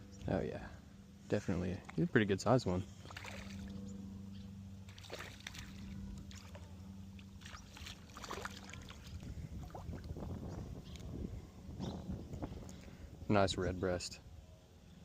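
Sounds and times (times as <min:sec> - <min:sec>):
steady low hum: 0:00.0 - 0:15.0
river water splashing: 0:02.8 - 0:03.9, 0:04.8 - 0:10.2.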